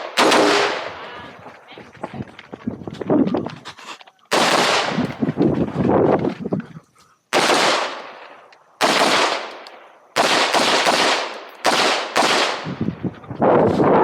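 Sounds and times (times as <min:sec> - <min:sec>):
rifle shots with echo: 0:00.0 - 0:01.1, 0:04.3 - 0:05.2, 0:07.3 - 0:12.8.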